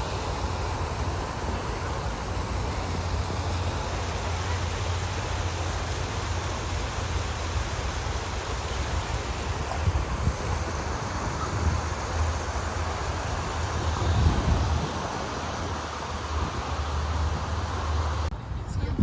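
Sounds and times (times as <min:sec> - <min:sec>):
wind buffeting microphone: 0:09.4 - 0:19.0.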